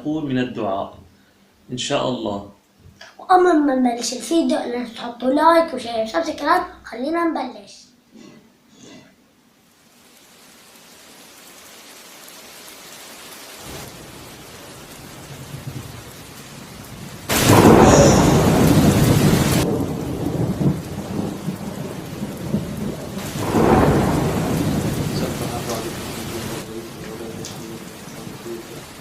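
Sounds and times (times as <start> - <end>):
heavy rain: 9.6 - 29.0
thunder rumbling: 13.6 - 29.0
loud thunderclap: 17.2 - 29.0.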